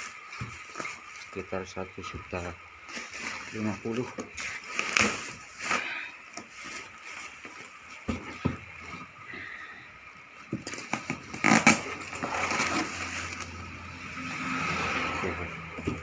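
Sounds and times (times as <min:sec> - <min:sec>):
knocks and clatter of handling: 0:06.3 - 0:09.1, 0:15.4 - 0:16.0.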